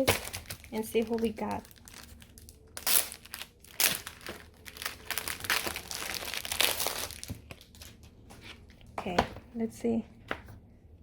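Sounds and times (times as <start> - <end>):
packaging crinkling and tearing: 0.0 - 8.1.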